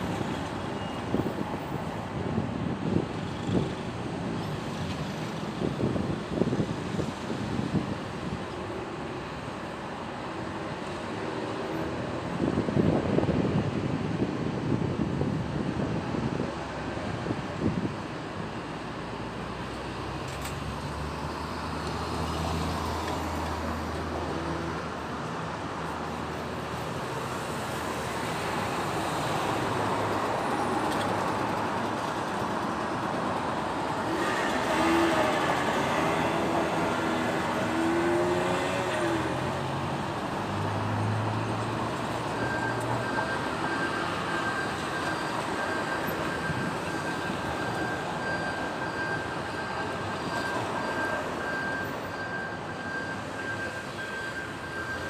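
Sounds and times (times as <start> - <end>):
city road traffic: 0.0 - 55.0
high electronic beep: 42.2 - 55.0.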